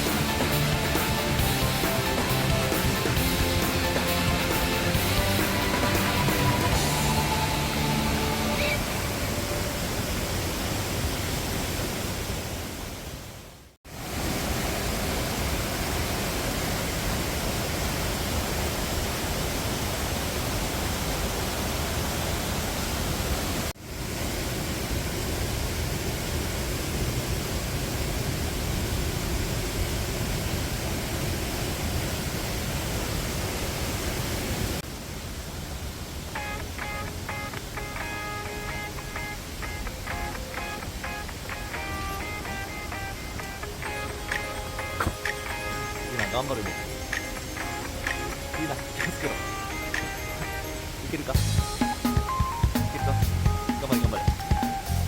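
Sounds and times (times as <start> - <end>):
background music: 0.0 - 9.7, 36.4 - 55.0
rushing mountain stream: 0.0 - 55.0.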